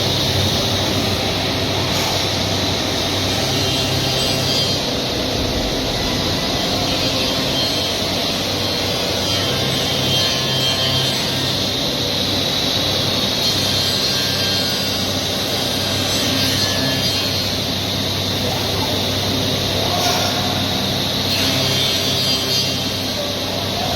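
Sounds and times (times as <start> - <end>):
low machine hum: 0.0 - 12.8
wood router machining wood: 0.0 - 23.8.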